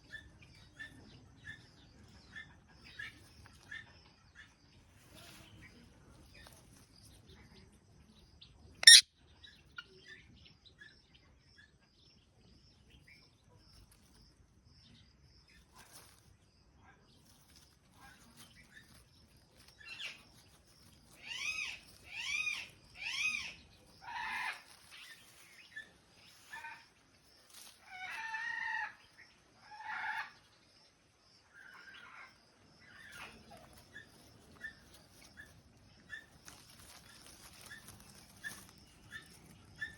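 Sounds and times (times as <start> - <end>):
parrot squawking: 8.8 - 9.0.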